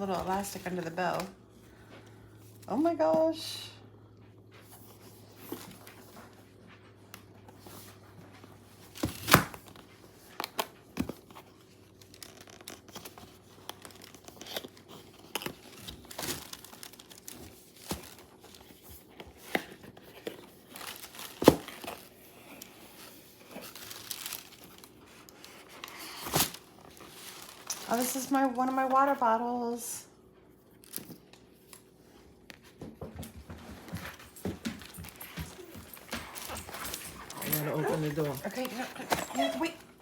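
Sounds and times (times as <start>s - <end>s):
paper crinkling and rustling: 7.5s - 29.3s, 34.8s - 40.0s.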